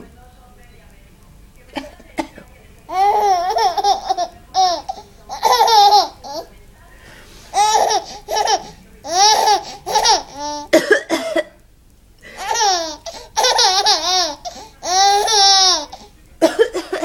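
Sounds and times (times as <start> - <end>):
woman coughing: 1.7 - 2.5, 9.4 - 11.6, 16.4 - 17.0
baby laughing: 2.9 - 6.5, 7.5 - 10.8, 12.4 - 17.0.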